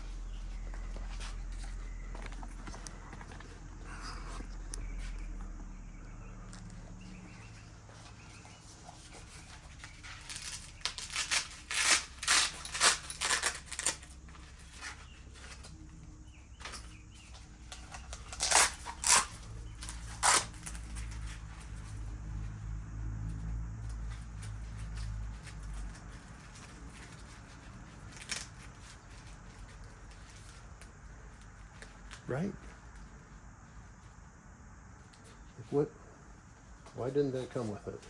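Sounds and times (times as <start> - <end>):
hook-and-loop straps ripping: 8.8 - 15.7, 17.7 - 21.9, 24.4 - 30.5.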